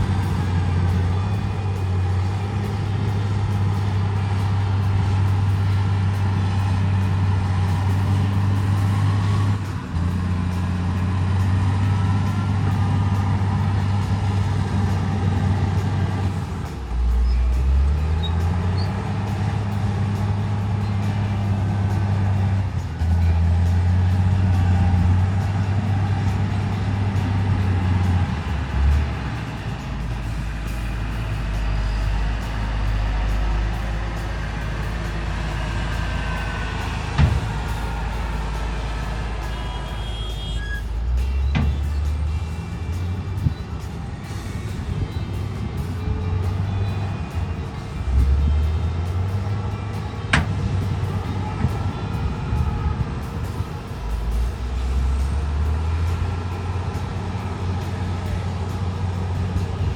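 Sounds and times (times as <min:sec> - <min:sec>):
bulldozer engine under load: 0:00.0 - 0:59.9.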